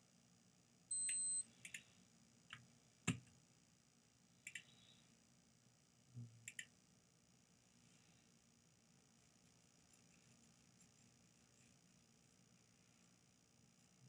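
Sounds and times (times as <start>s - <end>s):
short high electronic beep: 0.9s - 1.4s
computer mouse clicking: 4.4s - 4.8s, 6.5s - 6.7s.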